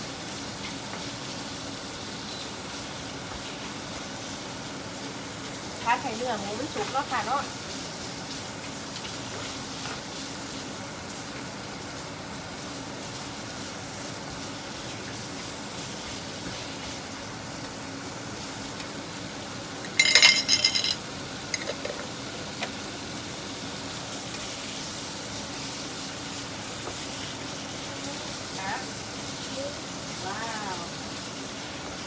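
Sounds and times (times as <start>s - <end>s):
meat sizzling in oil: 0.0s - 19.8s, 22.2s - 32.0s
cookware clattering: 19.9s - 21.0s, 21.6s - 22.2s.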